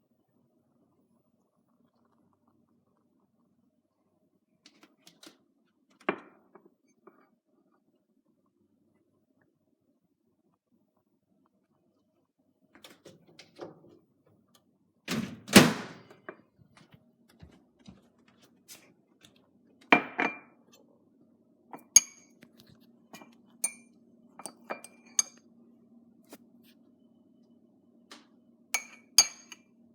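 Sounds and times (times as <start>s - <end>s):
spoon clinking against ceramic mug: 21.8s - 22.4s, 23.2s - 25.4s, 28.8s - 29.6s.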